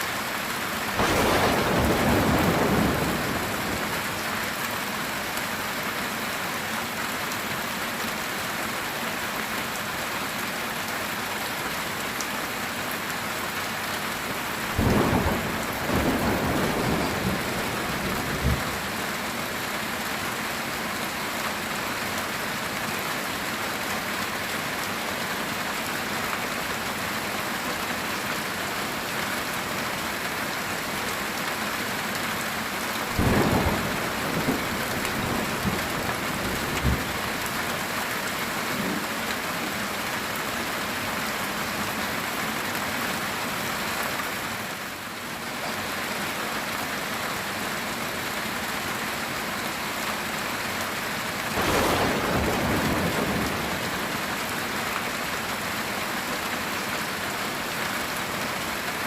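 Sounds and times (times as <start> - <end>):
heavy rain on a tin roof: 0.0 - 59.0
thunder rumbling: 1.0 - 4.2, 14.7 - 19.2, 33.1 - 37.6, 51.6 - 54.5.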